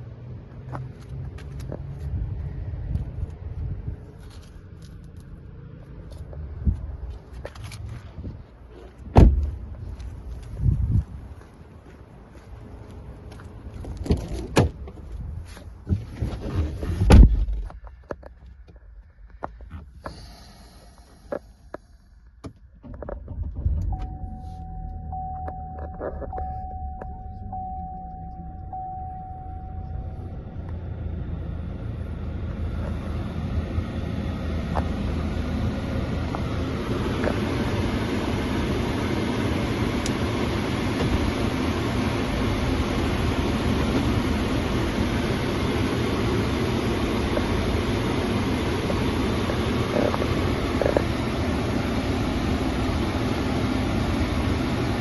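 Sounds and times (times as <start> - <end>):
engine and road noise: 0.0 - 55.0
car engine starting: 13.7 - 55.0
electronic chime tone pulsing: 24.0 - 30.4.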